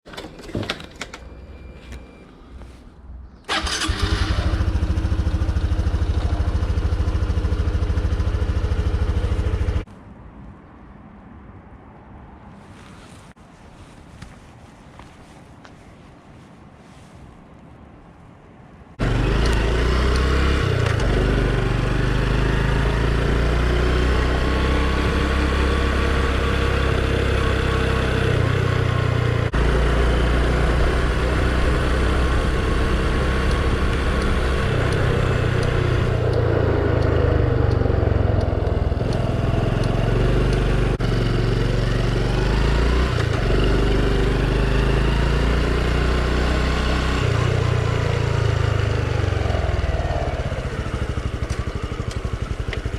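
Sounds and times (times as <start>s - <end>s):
small motorcycle engine running: 3.5s - 9.8s, 19.0s - 47.9s, 49.0s - 52.9s.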